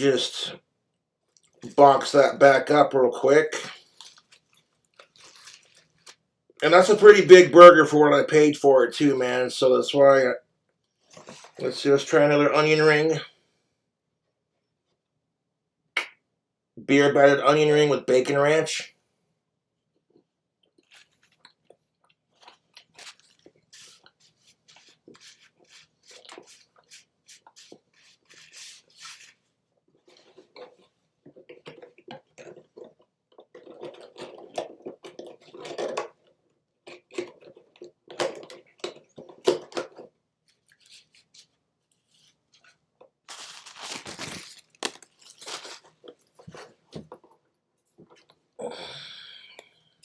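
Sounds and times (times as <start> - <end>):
man chewing crunchy food: 3.7 - 6.2, 20.6 - 29.2.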